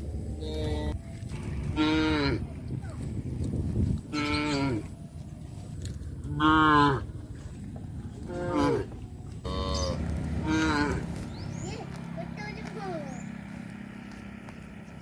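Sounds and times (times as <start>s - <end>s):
cattle mooing: 1.7s - 2.5s, 4.1s - 5.0s, 6.3s - 7.1s, 8.2s - 11.2s.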